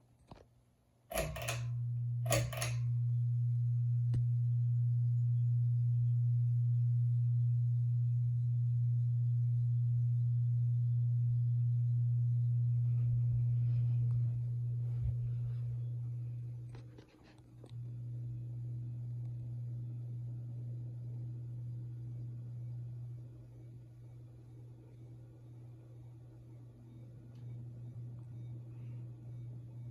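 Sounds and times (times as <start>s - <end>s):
ceiling fan motor buzzing: 1.0s - 29.9s
sharp click: 1.1s - 1.7s, 2.3s - 2.8s.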